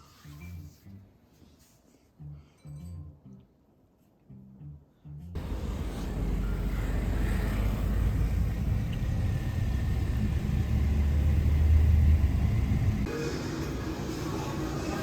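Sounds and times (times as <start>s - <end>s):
vehicle rumbling: 5.3s - 15.0s.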